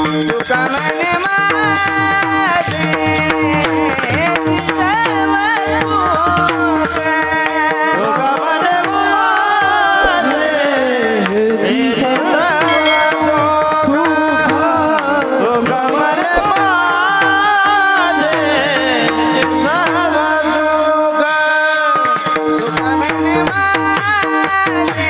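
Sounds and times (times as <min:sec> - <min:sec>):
man singing devotional song: 0:00.0 - 0:25.0
small jingling cymbals: 0:00.0 - 0:25.0
hand drum strokes: 0:09.8 - 0:17.5.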